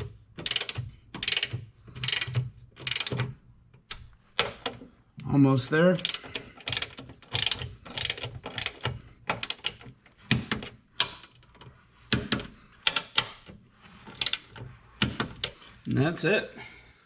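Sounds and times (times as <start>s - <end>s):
ratchet wrench clicking: 0.4s - 3.2s, 6.0s - 9.8s, 14.2s - 15.6s.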